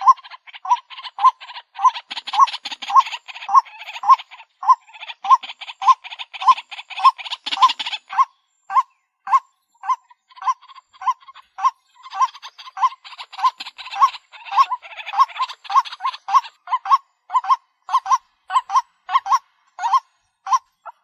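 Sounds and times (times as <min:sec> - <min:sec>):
chattering bird rattle: 0:00.0 - 0:08.1, 0:10.3 - 0:16.5
waterhen call repeated notes: 0:00.0 - 0:21.0.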